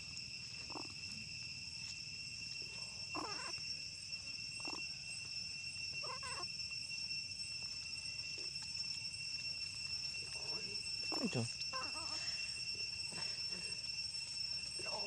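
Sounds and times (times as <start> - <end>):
monkey calls: 0.7 - 1.0, 3.1 - 3.6, 4.6 - 4.9, 6.0 - 6.5, 10.4 - 12.6.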